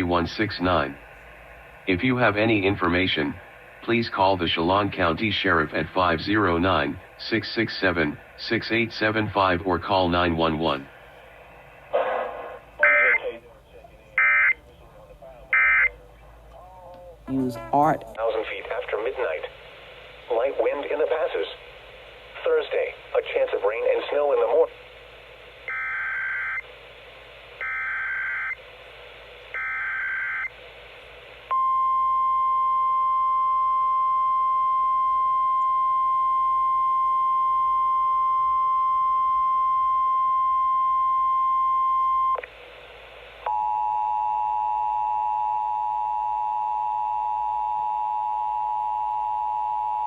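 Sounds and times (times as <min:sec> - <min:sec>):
steady warning alarm tone: 0:12.8 - 0:13.3, 0:14.2 - 0:14.6, 0:15.5 - 0:16.0, 0:25.7 - 0:26.6, 0:27.6 - 0:28.6, 0:29.5 - 0:30.6, 0:31.5 - 0:42.4, 0:43.5 - 0:50.0.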